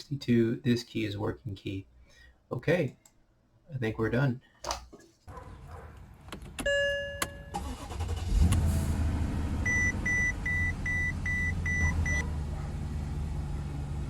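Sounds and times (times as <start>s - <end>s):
car engine starting and idling: 6.1s - 14.0s
short warning beeps: 9.7s - 12.2s.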